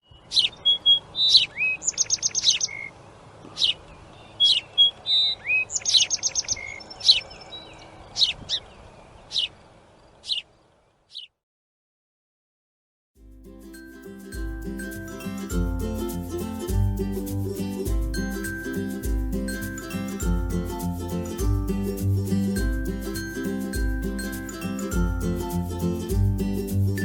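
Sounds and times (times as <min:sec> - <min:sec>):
small birds chirping: 0:00.0 - 0:11.4.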